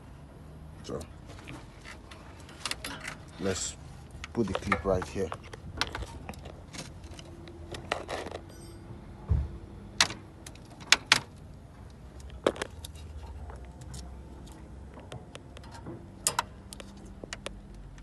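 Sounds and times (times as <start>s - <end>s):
dull thump: 9.3s - 9.6s.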